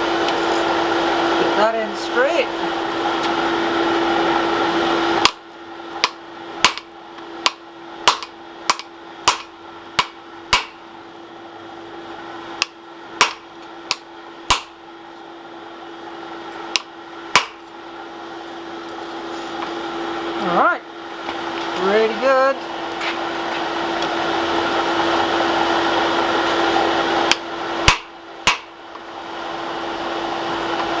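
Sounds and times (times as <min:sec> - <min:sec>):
hammer striking hot steel: 0:05.2 - 0:10.8, 0:12.6 - 0:14.8, 0:16.6 - 0:17.8, 0:27.2 - 0:28.8.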